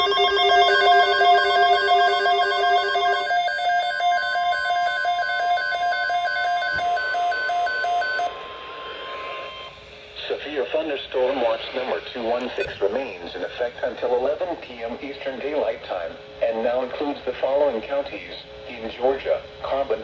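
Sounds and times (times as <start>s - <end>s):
electronic alert beeps: 0.0s - 8.3s
steady electronic tone: 0.0s - 9.7s.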